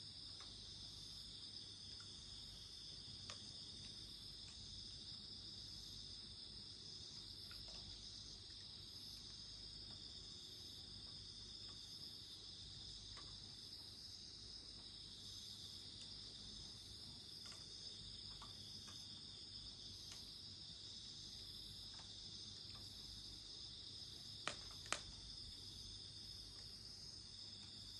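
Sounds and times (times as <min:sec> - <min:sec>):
crickets trilling: 0:00.0 - 0:27.9
faint crackles: 0:24.4 - 0:25.7.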